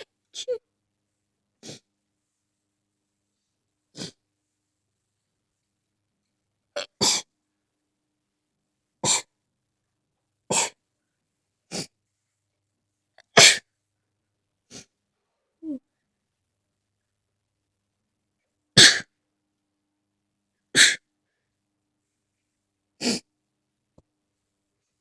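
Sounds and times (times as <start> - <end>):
person sneezing: 4.0 - 4.2, 6.8 - 7.3, 9.0 - 9.3, 10.5 - 10.8, 13.3 - 13.6, 18.8 - 19.1, 20.8 - 21.0, 23.0 - 23.2.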